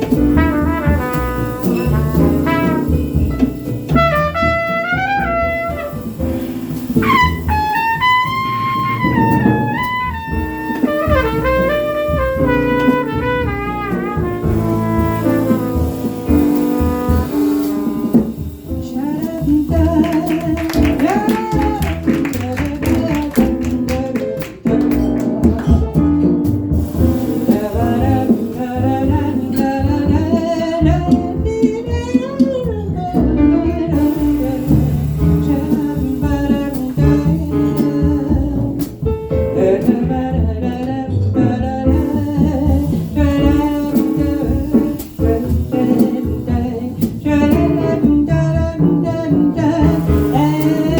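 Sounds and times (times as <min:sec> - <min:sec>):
drums: 0:00.0 - 0:50.9
piano: 0:00.0 - 0:50.9
upright double bass: 0:00.0 - 0:50.9
woman singing: 0:18.8 - 0:25.6, 0:27.3 - 0:39.0, 0:39.6 - 0:50.9.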